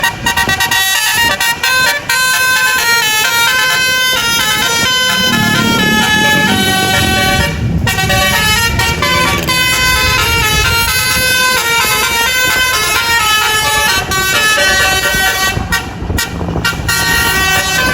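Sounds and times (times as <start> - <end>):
bus horn playing melody: 0.0 - 17.9
low rumble: 3.8 - 17.8.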